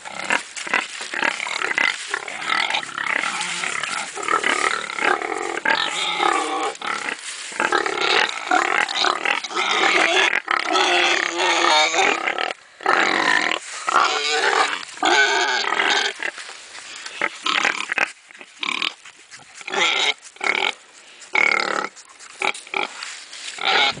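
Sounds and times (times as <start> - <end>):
piglets squealing: 7.8 - 12.4, 23.6 - 24.0.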